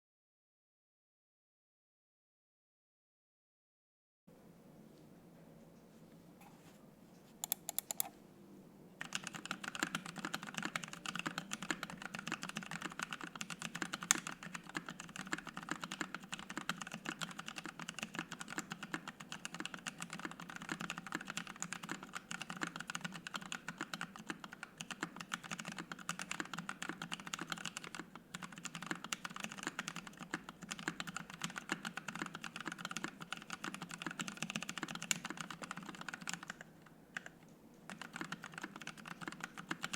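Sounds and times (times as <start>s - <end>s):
mechanical keyboard typing: 7.4s - 8.1s, 9.0s - 39.9s.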